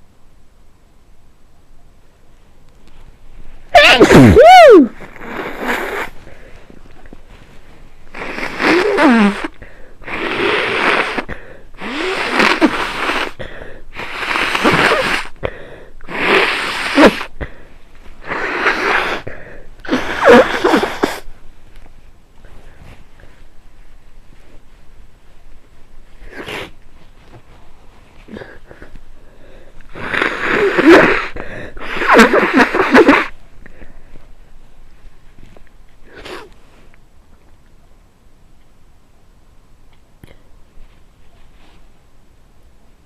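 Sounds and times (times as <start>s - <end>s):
person sneezing: 3.7s - 6.2s, 8.1s - 15.4s, 16.1s - 17.6s, 18.2s - 21.3s, 26.2s - 26.8s, 29.9s - 33.4s, 36.1s - 36.5s
forceful air blasts through nose: 3.7s - 6.4s, 8.1s - 17.6s, 18.2s - 21.3s, 29.9s - 33.4s.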